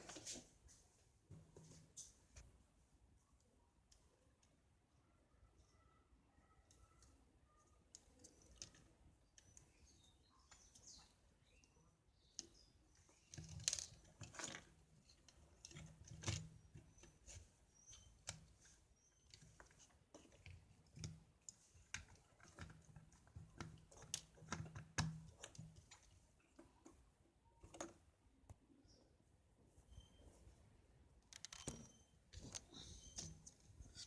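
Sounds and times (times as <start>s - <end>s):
plastic parts clicking and tapping: 7.8s - 27.0s, 27.6s - 28.6s, 31.2s - 34.0s.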